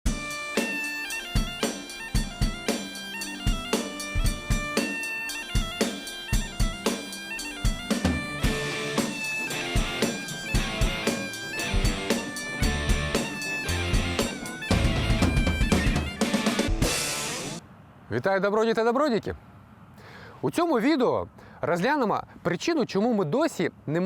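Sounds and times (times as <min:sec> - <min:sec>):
instrumental music with drum beat: 0:00.1 - 0:17.6.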